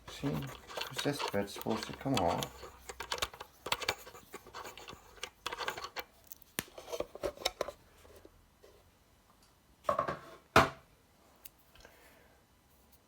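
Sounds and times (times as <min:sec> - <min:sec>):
metal scraping clanks: 0:00.0 - 0:06.0
metal fittings clicking: 0:00.0 - 0:06.4.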